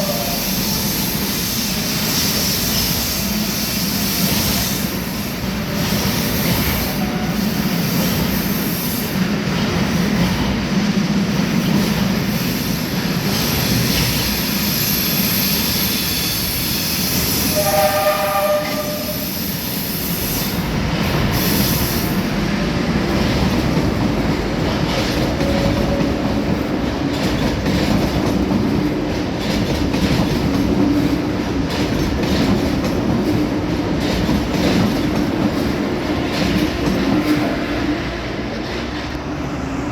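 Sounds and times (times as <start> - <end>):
train horn: 0.0 - 0.7, 6.8 - 7.6, 17.4 - 19.4
train rumbling on rails: 0.0 - 39.9.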